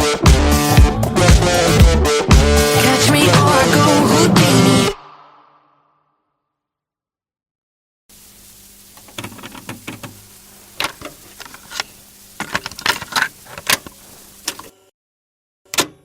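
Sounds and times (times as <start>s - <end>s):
steady hiss: 8.1s - 14.8s
sharp clicks and clatter: 10.8s - 14.7s.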